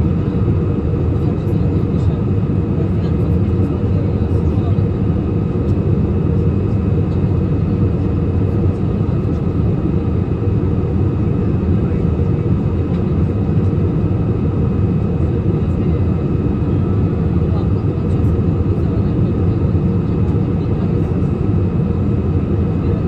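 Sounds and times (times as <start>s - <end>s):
aircraft cabin engine rush: 0.0s - 23.0s.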